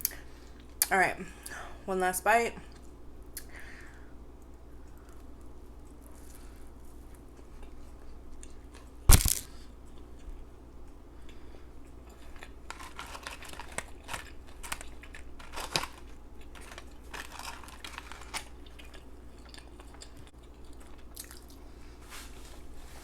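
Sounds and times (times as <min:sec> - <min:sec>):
person chewing food: 0:02.7 - 0:22.0.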